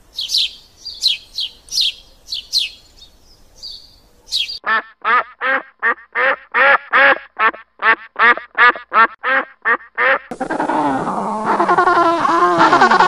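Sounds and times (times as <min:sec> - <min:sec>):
duck quacking: 0:04.6 - 0:13.0
high squeaky animal cries: 0:10.4 - 0:13.0.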